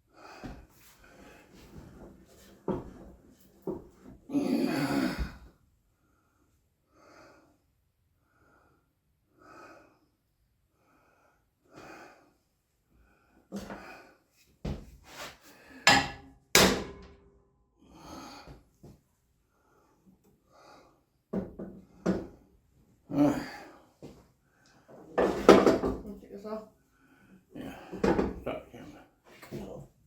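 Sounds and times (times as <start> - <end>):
knocks and bangs of handling: 15.9 - 17.2.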